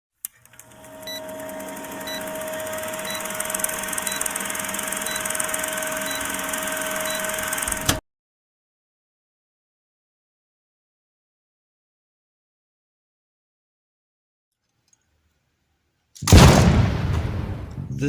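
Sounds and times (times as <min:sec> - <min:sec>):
two-tone electronic hum: 0:00.3 - 0:08.0
short high beeps: 0:01.1 - 0:01.3, 0:02.0 - 0:07.4.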